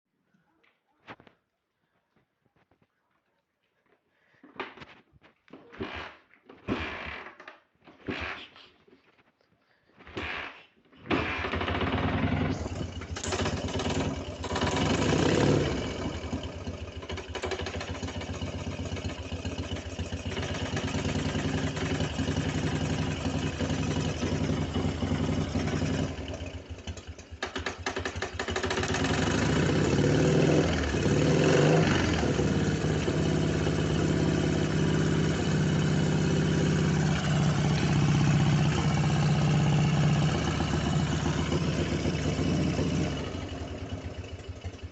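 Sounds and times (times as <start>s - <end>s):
engine running with knocking tick: 11.6s - 44.9s.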